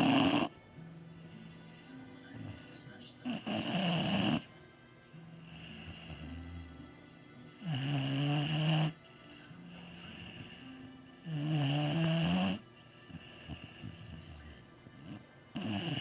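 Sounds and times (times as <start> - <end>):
dog snuffles: 0.0 - 0.5, 2.4 - 4.5, 7.6 - 10.7, 11.3 - 16.0
dog snoring loudly: 0.0 - 1.7, 2.3 - 4.5, 5.3 - 6.8, 7.6 - 16.0.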